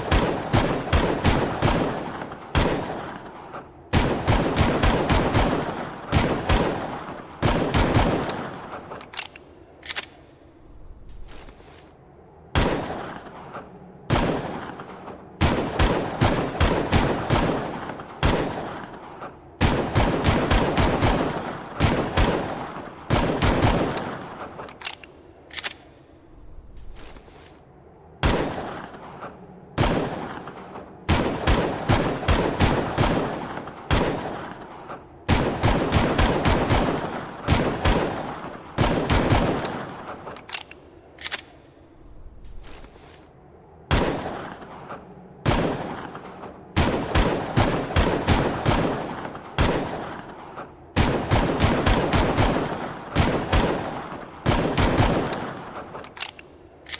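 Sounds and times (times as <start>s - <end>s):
rapid pistol shots echoing: 0.0s - 10.3s, 12.6s - 26.0s, 28.2s - 42.9s, 43.9s - 56.9s.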